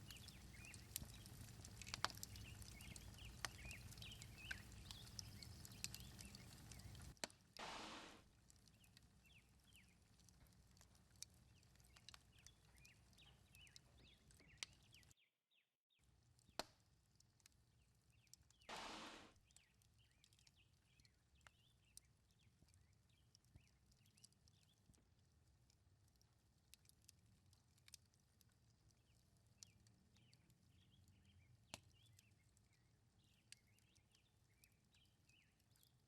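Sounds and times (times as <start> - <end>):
small sharp clicks: 0.0 - 9.0, 9.7 - 15.1
faint bird chirps: 2.2 - 7.1
brief rush of noise: 7.6 - 8.2, 18.7 - 19.3.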